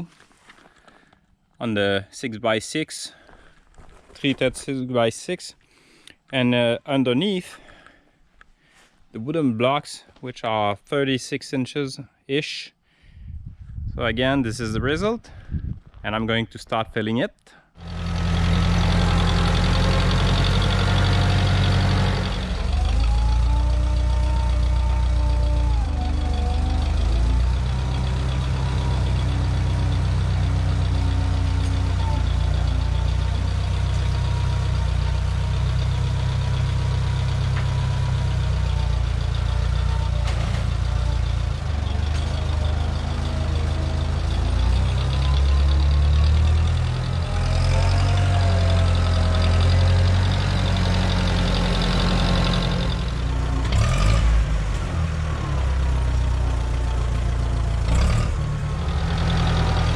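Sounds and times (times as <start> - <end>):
tractor engine running: 17.8 - 59.9.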